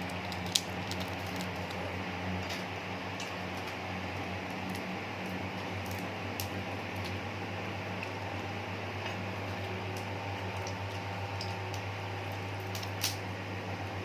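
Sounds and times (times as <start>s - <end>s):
shrimp shell clicks and crackles: 0.0s - 1.8s
low hum and hiss: 0.0s - 14.0s.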